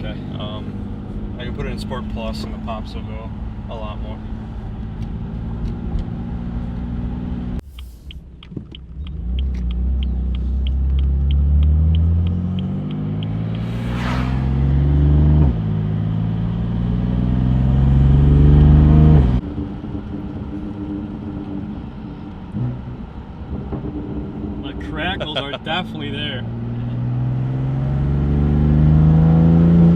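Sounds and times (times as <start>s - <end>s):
light regular ticking: 7.6s - 13.4s
car exhaust accelerating hard: 8.8s - 29.9s.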